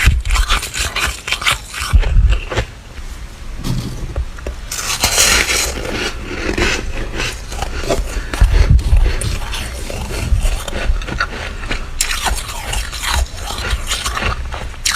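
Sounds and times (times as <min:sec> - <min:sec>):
frost being scraped and crunched: 0:00.0 - 0:04.0, 0:04.7 - 0:14.9
low thuds: 0:03.1 - 0:04.7.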